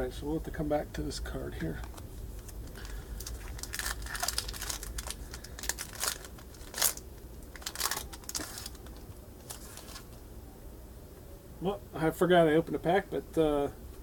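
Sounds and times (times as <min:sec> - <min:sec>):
cards rustling: 0:01.6 - 0:10.2
plastic wrapper crinkling: 0:01.7 - 0:10.2.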